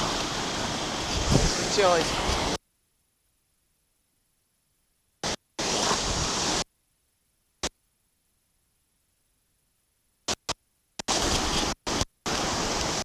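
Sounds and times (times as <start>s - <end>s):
rushing waterfall water: 0.0s - 2.6s, 5.2s - 6.7s, 10.3s - 13.0s.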